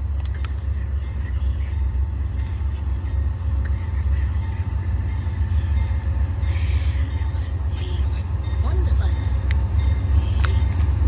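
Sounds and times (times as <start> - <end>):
train rolling past: 0.0 - 11.0.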